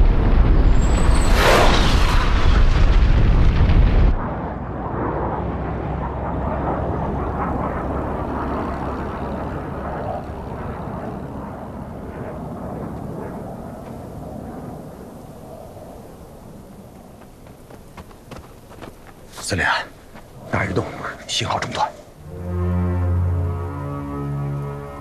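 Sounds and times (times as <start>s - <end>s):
bombs exploding: 0.0s - 4.2s
deep rumble: 0.0s - 14.8s.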